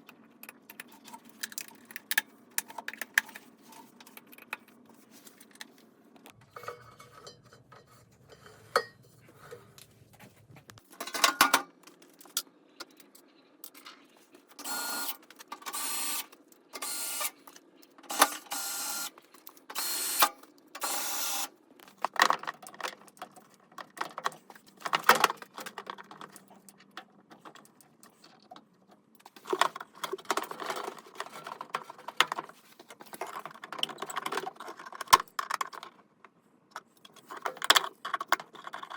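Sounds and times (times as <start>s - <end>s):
tools and metal parts clinking: 0.3s - 9.8s, 10.9s - 14.6s, 29.2s - 36.0s.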